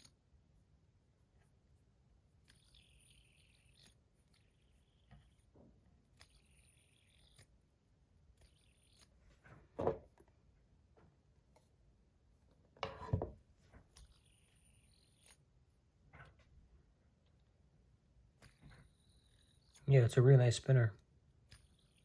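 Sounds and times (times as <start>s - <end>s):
metal fidget spinner rubbing and clicking: 2.4s - 7.6s, 8.3s - 9.2s, 13.9s - 15.5s, 18.4s - 20.2s, 21.4s - 22.0s.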